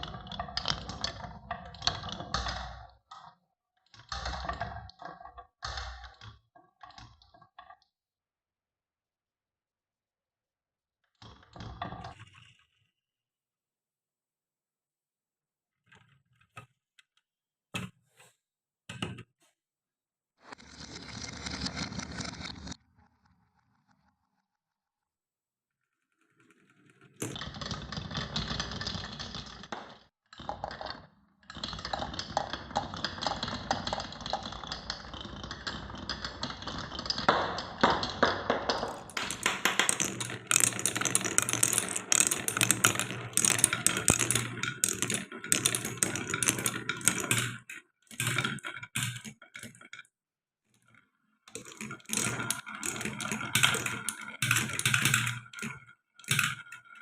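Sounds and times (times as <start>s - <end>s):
marbles rattling down wooden run: 0.0s - 2.8s, 27.2s - 30.8s, 31.6s - 50.1s, 51.5s - 57.0s.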